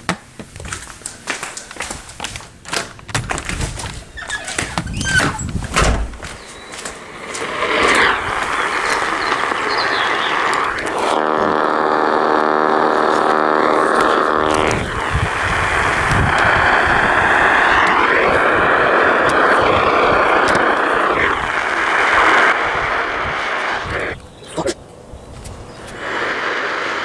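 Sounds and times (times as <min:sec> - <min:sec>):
buzzing tone: 0:04.3 - 0:17.2
radio static hiss: 0:05.8 - 0:27.0
radio whistles: 0:06.4 - 0:24.7.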